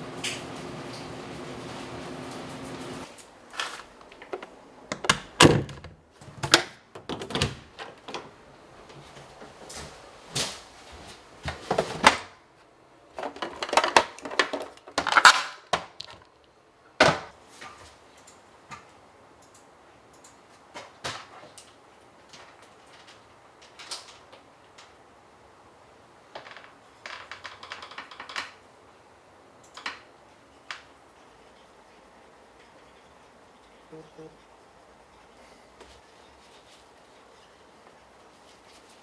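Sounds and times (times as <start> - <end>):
household objects knocking and clattering: 26.4 - 28.6.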